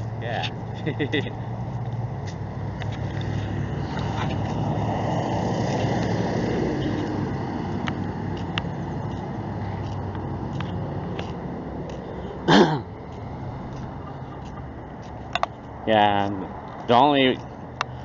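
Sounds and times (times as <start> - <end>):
road noise: 0.0 - 18.0.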